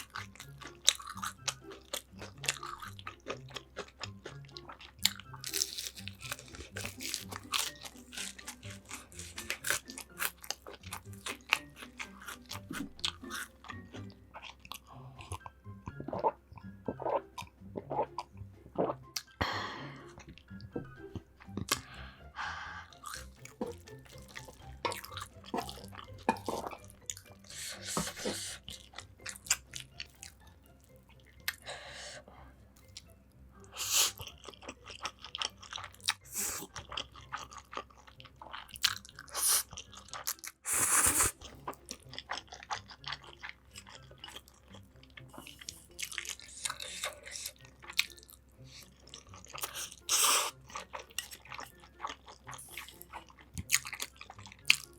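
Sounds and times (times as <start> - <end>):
chewing: 0.0 - 19.4, 20.2 - 21.9, 22.9 - 31.7, 33.7 - 54.9
wet mouth sounds: 0.0 - 22.1, 22.9 - 30.0, 33.7 - 34.4, 35.0 - 54.9
crisp crunching bites: 5.0 - 13.3.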